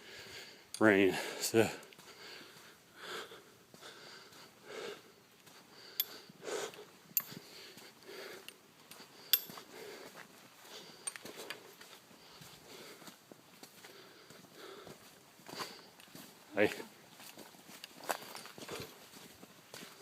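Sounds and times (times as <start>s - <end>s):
person breathing hard: 0.0s - 16.0s.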